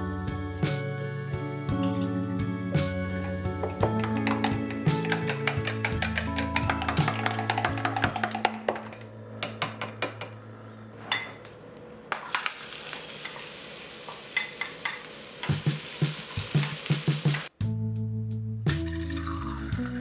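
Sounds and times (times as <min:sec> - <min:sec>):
stirring clicks: 0:03.2 - 0:10.4
food sizzling in a pan: 0:11.0 - 0:17.5.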